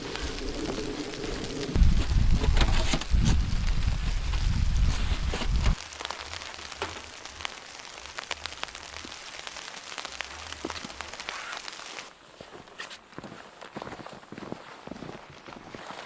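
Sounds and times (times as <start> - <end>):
wind rumbling on microphone: 0.0 - 5.8
steady hiss: 0.0 - 12.1.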